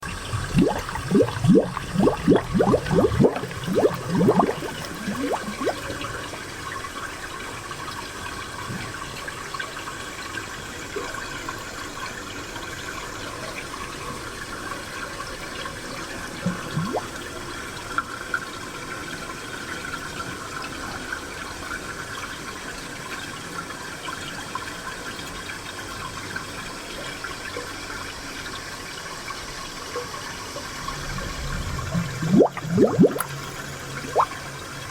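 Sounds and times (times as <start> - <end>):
water bubbling plops: 0.0 - 6.6, 16.4 - 17.2, 30.9 - 34.9
spring water gurgling: 0.0 - 7.3, 16.4 - 17.4, 30.4 - 34.9.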